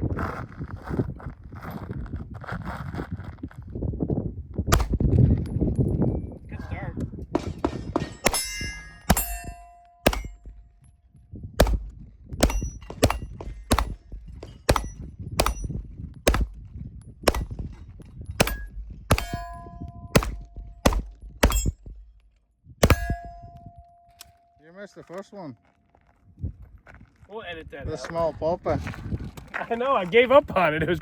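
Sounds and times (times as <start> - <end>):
pistol shots: 4.7 - 5.1, 8.2 - 10.6, 11.6 - 16.6, 17.2 - 17.7, 18.4 - 21.8, 22.8 - 23.4
bullets clanging on steel: 7.3 - 10.9, 11.6 - 25.3.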